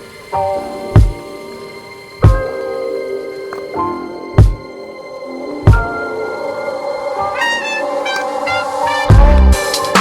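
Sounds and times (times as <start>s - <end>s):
electronic music with synth notes: 0.0s - 10.0s
deep heavy beat: 4.4s - 4.7s, 5.6s - 6.0s, 7.4s - 10.0s.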